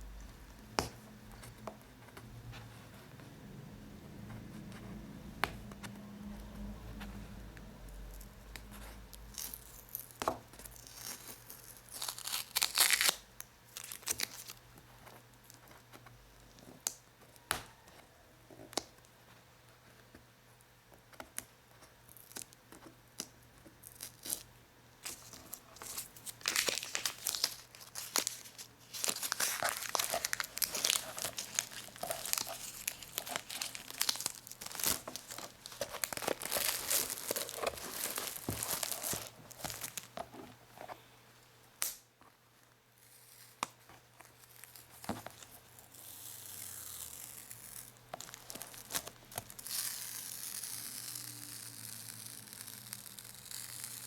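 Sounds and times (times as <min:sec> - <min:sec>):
sticky material peeling: 0:25.1 - 0:40.2.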